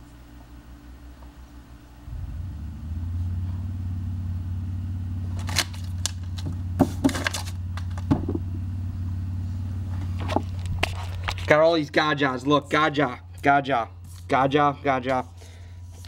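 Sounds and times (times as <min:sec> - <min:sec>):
low mechanical hum: 0:00.0 - 0:16.0
card wrappers crinkling: 0:05.3 - 0:08.1.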